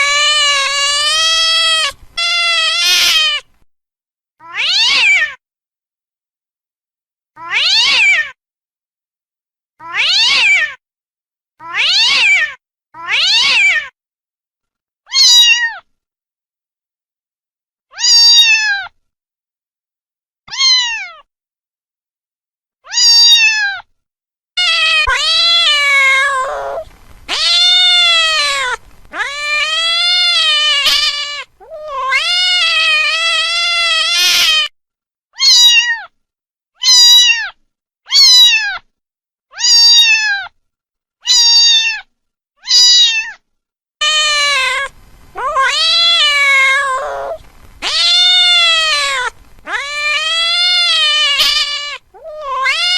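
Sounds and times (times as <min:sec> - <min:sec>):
cat meowing: 0:00.0 - 0:03.4, 0:04.4 - 0:05.3, 0:07.4 - 0:08.3, 0:09.8 - 0:10.6, 0:11.6 - 0:12.4, 0:13.0 - 0:13.8, 0:15.1 - 0:15.8, 0:17.9 - 0:18.9, 0:20.5 - 0:21.2, 0:22.9 - 0:23.8, 0:24.6 - 0:34.7, 0:35.4 - 0:36.1, 0:36.8 - 0:38.8, 0:39.5 - 0:40.5, 0:41.3 - 0:43.4, 0:44.0 - 0:52.9.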